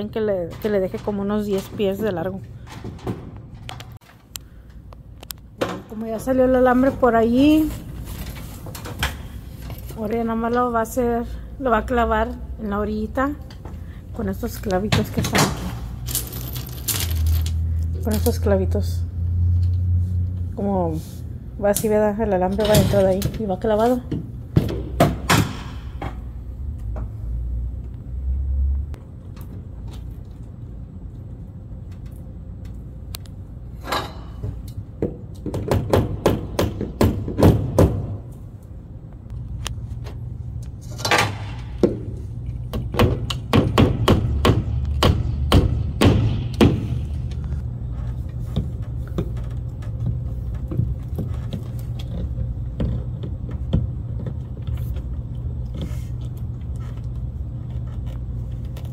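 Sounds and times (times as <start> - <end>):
low hum: 2.4 - 22.4.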